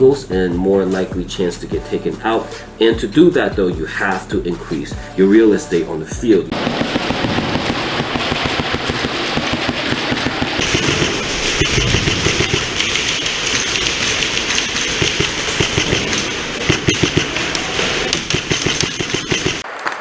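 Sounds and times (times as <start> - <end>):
airsoft guns firing rapidly: 6.5 - 19.6.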